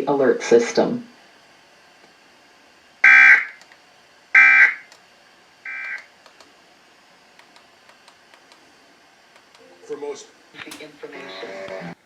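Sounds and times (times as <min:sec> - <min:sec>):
digital data tone bursts: 0:03.0 - 0:03.6, 0:04.4 - 0:04.8, 0:05.7 - 0:06.0.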